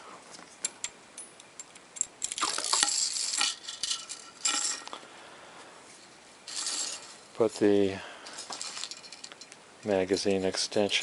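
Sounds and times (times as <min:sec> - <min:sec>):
metal spring scraping and clinking: 0:02.0 - 0:05.0, 0:05.9 - 0:10.7.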